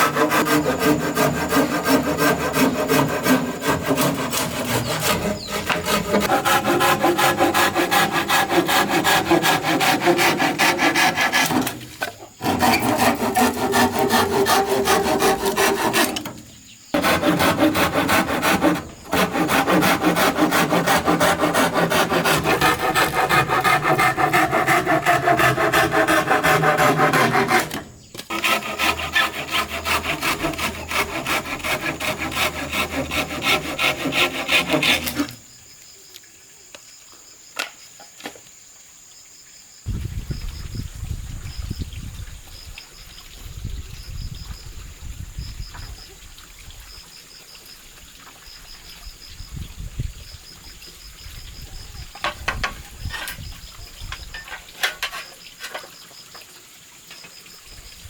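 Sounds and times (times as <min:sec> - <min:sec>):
hand tool strokes on wood: 0:00.0 - 0:16.4, 0:17.0 - 0:35.4.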